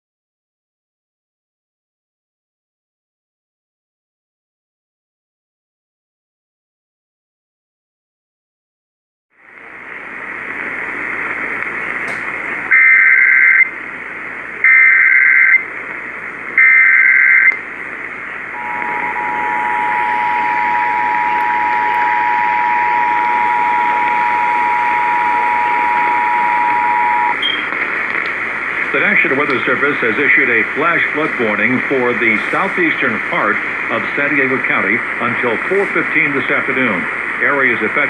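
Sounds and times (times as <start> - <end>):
radio hiss: 9.5 - 38.0
two-tone alert signal: 18.6 - 27.7.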